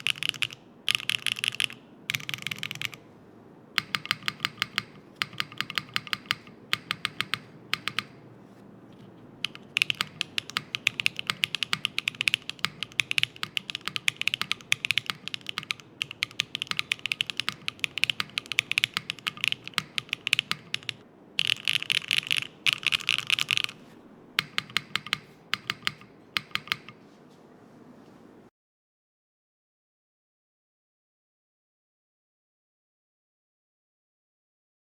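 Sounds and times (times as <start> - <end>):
mechanical keyboard typing: 0.0 - 3.0, 3.8 - 27.0.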